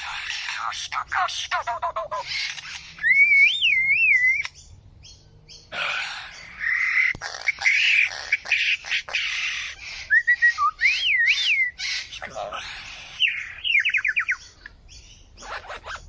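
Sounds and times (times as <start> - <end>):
bird squawking and chattering: 0.0 - 4.7, 5.5 - 16.0
bird whistles gliding: 2.5 - 4.6, 9.7 - 12.1.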